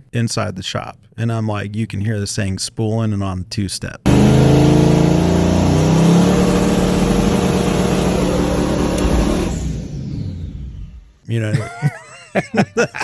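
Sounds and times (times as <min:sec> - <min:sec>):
race car engine on launch limiter: 0:04.1 - 0:11.2.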